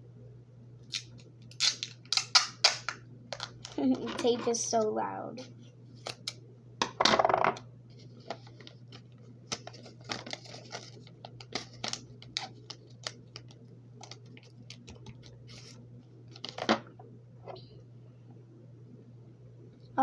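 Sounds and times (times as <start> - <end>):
sticky tape ripping off roll: 0.9 - 2.9
tape and paper crackling: 0.9 - 4.9, 6.0 - 6.4, 7.9 - 16.7.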